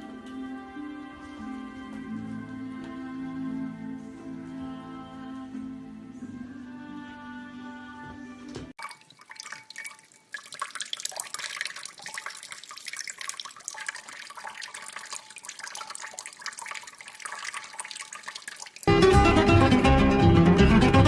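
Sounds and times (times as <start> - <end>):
water running and splashing: 8.8 - 18.9.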